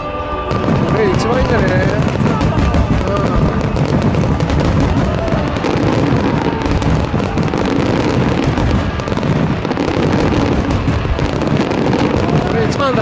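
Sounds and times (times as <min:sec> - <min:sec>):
fireworks bursting and crackling: 0:00.0 - 0:13.0
music playing: 0:00.0 - 0:13.0.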